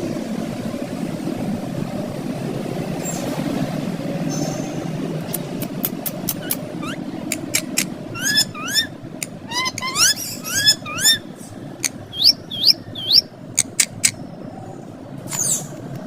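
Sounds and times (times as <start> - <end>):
parrots chirping: 6.0 - 14.2
sharp clicks: 7.3 - 7.9, 13.6 - 14.2.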